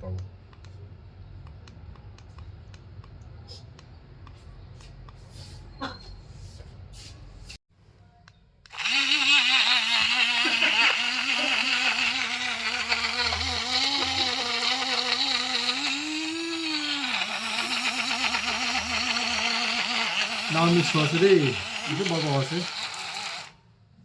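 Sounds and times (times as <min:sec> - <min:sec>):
mini grinder motor whine: 0:08.7 - 0:23.7.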